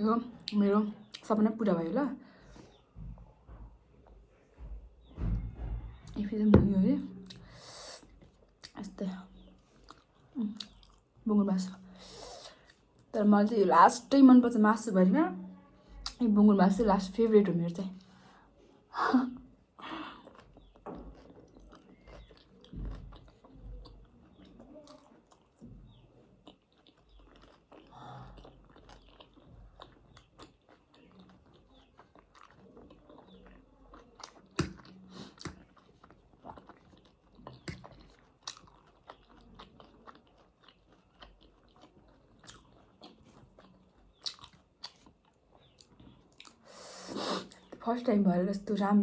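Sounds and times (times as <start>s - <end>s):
food crunching: 7.1s - 11.1s, 20.0s - 47.8s
person chewing food: 9.4s - 11.2s, 19.5s - 47.8s.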